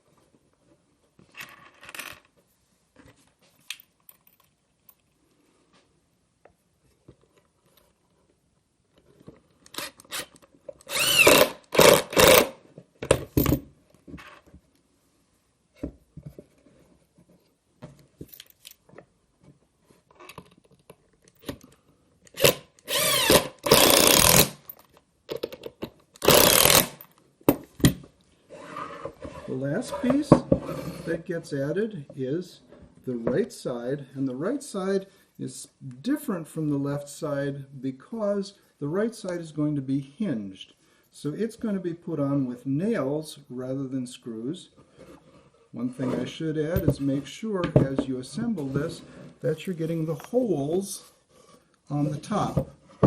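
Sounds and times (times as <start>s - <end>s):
power drill whirring: 9.8s - 12.6s, 22.4s - 24.6s, 26.2s - 27.0s.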